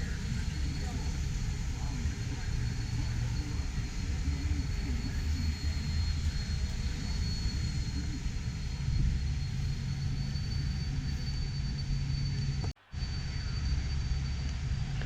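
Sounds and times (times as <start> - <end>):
faint background voices: 0.0 - 9.0
low hall rumble and hum: 0.0 - 15.0
thin high whine: 0.0 - 15.0.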